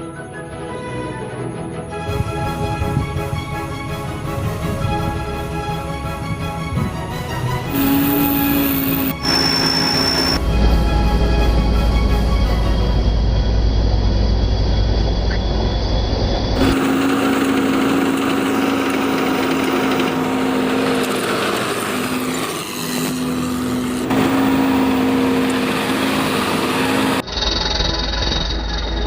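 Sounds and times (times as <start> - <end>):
background music: 0.0 - 14.1
combine harvester engine drone: 0.0 - 29.0.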